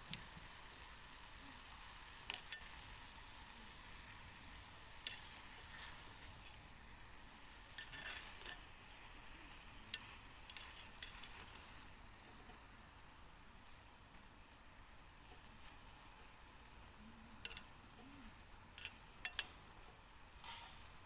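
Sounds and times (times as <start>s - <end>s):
faint sizzling hiss: 0.0s - 21.0s
metal utensil scraping a pot: 5.0s - 6.6s, 7.7s - 8.8s, 9.9s - 11.8s, 17.4s - 17.8s, 18.8s - 19.6s.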